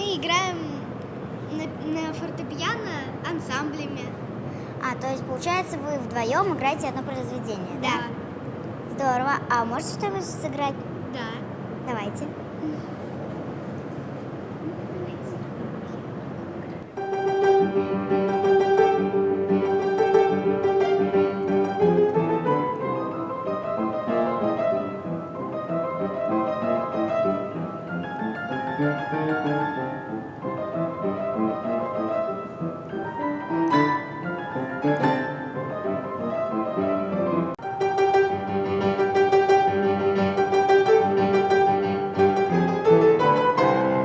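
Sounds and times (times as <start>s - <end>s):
classical piano duet: 17.0s - 44.0s.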